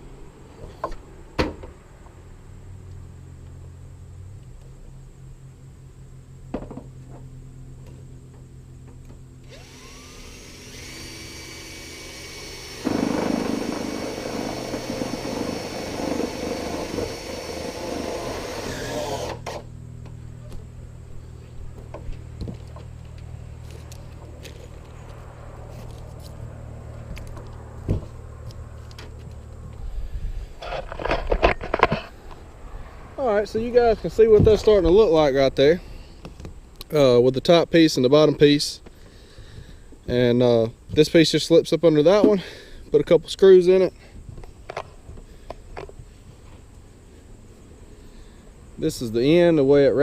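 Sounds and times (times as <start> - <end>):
steady low hum: 2.2 - 41.3
power tool whine: 9.4 - 19.7.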